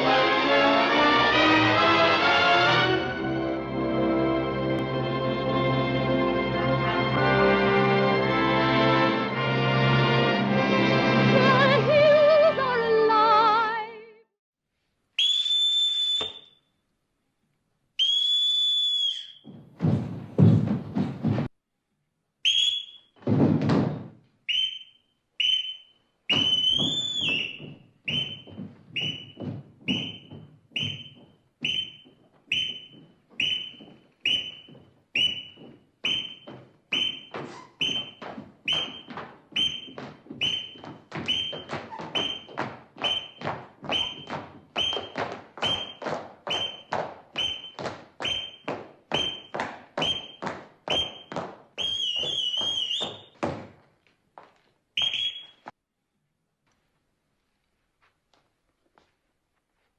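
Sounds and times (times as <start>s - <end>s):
long whistle toot rising: 15.2s - 16.6s, 18.0s - 19.4s, 22.5s - 23.1s, 24.5s - 48.6s, 49.2s - 53.4s, 55.0s - 55.6s
short whistle toots with thumps: 15.2s - 16.7s, 18.0s - 19.6s, 22.4s - 23.2s, 24.5s - 53.4s, 55.0s - 55.7s.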